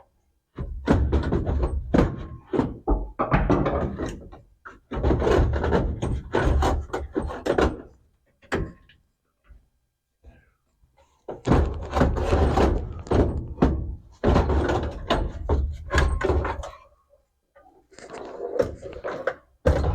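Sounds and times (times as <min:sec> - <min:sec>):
parts clunking and rattling: 0:11.3 - 0:16.9.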